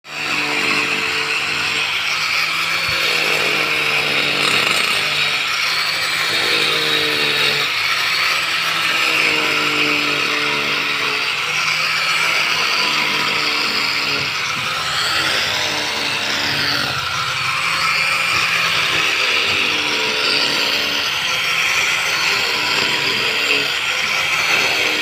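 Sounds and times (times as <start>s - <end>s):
angle grinder cutting concrete: 0.0s - 25.0s.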